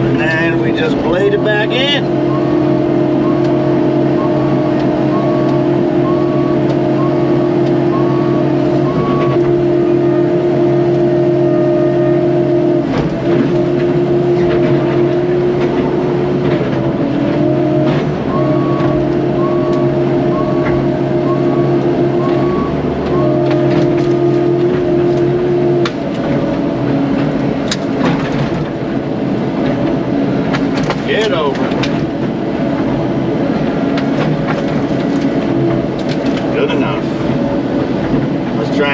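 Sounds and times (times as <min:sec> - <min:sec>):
excavator diesel engine running: 0:00.0 - 0:38.9
short beeps: 0:01.2 - 0:12.7, 0:17.5 - 0:25.1.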